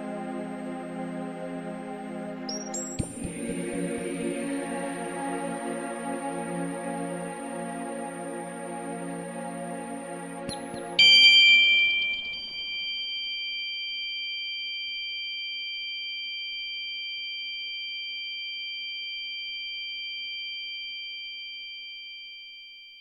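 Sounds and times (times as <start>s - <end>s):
bell-like chime ringing: 10.5s - 14.3s.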